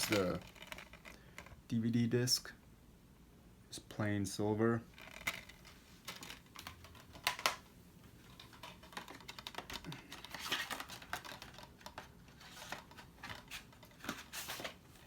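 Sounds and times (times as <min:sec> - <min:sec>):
rustling: 0:00.0 - 0:01.6, 0:04.8 - 0:15.0
plastic case clicking: 0:05.2 - 0:07.6.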